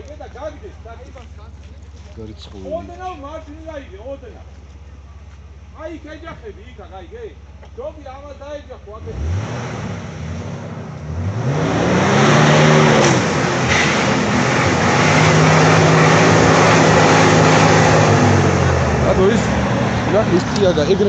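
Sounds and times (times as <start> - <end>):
engine revving hard: 9.0 - 21.0
loud rushing noise: 11.6 - 21.0.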